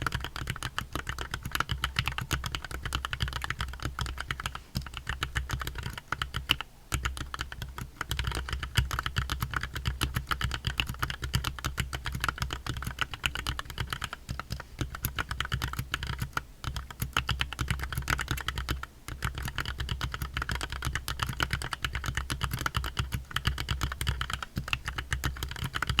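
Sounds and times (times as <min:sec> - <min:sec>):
fast typing on mechanical keyboard: 0:00.0 - 0:26.0.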